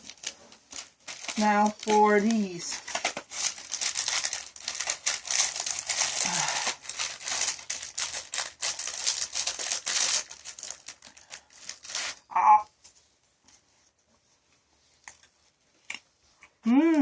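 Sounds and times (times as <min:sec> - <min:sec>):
plastic snack bag crinkling: 0:00.0 - 0:12.3.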